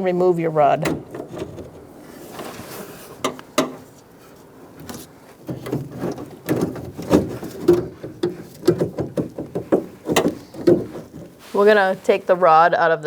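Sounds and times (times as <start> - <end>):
small knocks and rattles: 0.8 - 11.6
car door handle rod clicking: 4.8 - 11.3.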